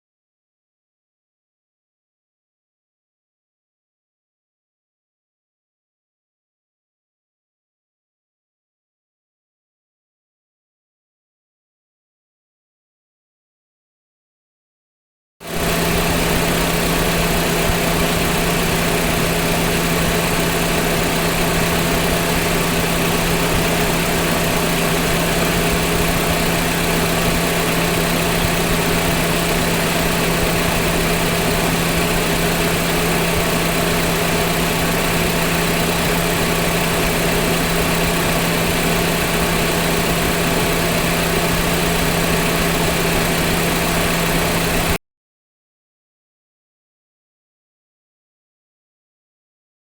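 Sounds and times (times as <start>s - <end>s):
car engine idling: 15.5s - 45.0s.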